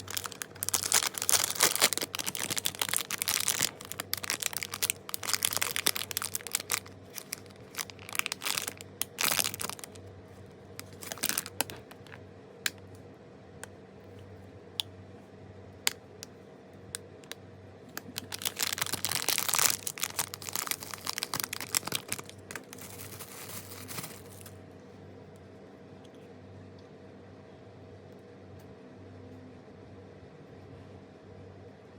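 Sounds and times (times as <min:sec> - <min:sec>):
plastic wrapping crinkling: 0:00.0 - 0:10.0, 0:10.8 - 0:12.8, 0:17.9 - 0:24.6.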